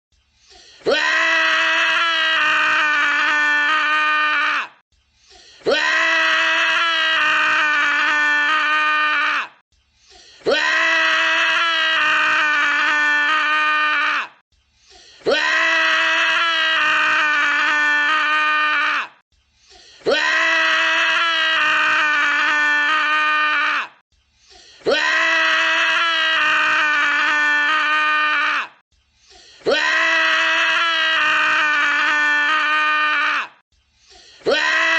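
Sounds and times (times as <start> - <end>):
man screaming: 0.8 - 4.8, 5.6 - 9.6, 10.4 - 14.4, 15.2 - 19.2, 20.0 - 24.0, 24.8 - 28.8, 29.6 - 33.6, 34.4 - 34.9.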